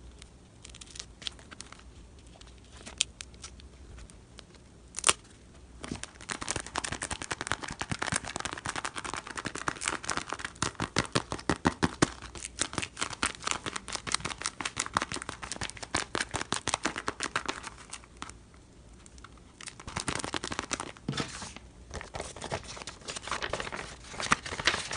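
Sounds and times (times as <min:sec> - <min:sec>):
paper crinkling and tearing: 0:00.6 - 0:04.1, 0:19.6 - 0:24.9.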